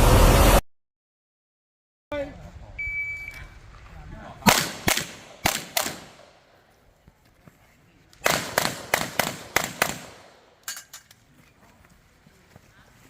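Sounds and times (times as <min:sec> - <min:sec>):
pistol shots with ringing echo: 0:04.4 - 0:06.4, 0:08.2 - 0:10.6.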